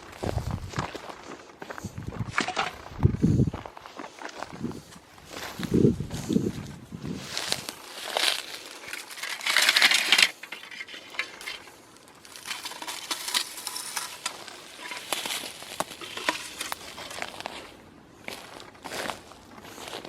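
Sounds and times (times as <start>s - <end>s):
plastic and paper crinkling: 7.5s - 17.8s.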